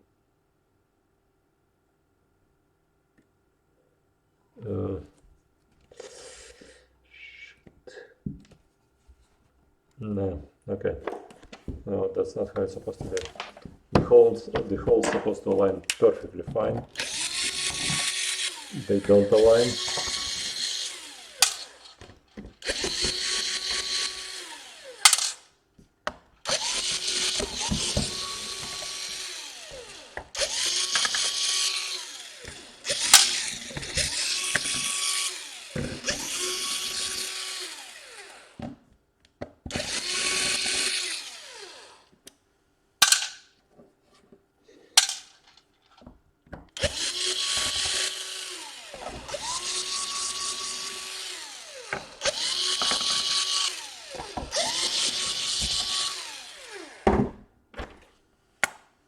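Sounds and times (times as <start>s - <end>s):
electric screwdriver whine: 17.0s - 25.5s, 26.4s - 38.6s, 39.7s - 42.1s, 46.8s - 57.2s.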